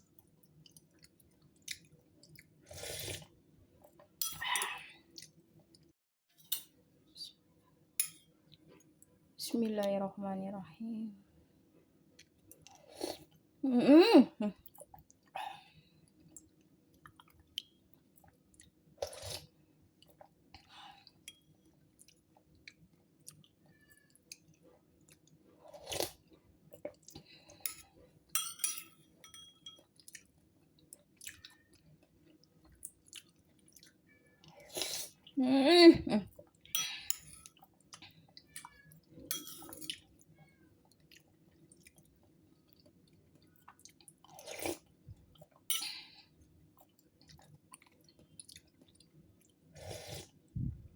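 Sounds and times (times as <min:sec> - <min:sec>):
chewing and mouth noises: 0:16.0 - 0:27.8, 0:29.8 - 0:35.4, 0:37.4 - 0:45.7, 0:46.7 - 0:50.4.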